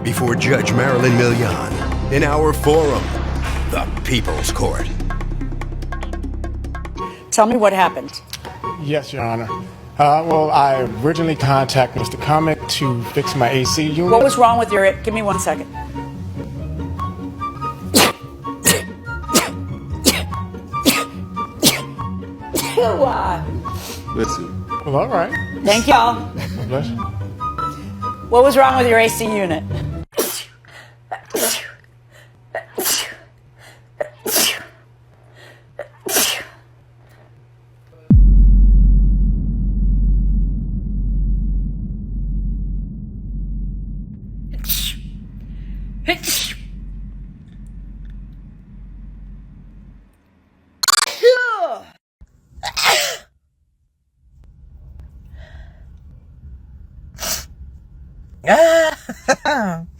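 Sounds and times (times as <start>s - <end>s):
loud low rumble: 0.8s - 7.0s, 38.1s - 50.3s, 54.3s - 58.5s
woman sneezing: 18.0s - 22.0s, 22.6s - 23.0s, 30.1s - 30.6s, 31.2s - 31.8s, 32.6s - 33.3s, 34.0s - 34.8s, 35.8s - 36.6s, 52.6s - 53.3s.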